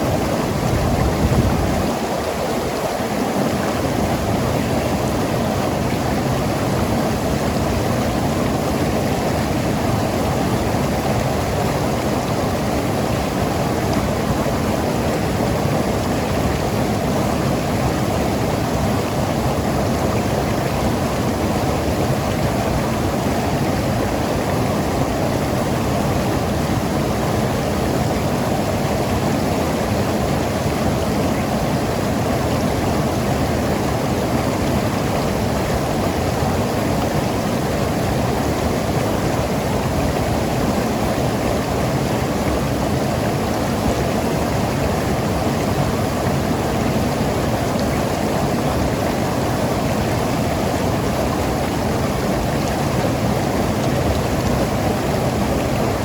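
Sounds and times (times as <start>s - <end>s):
river rushing over rocks: 0.0s - 56.0s.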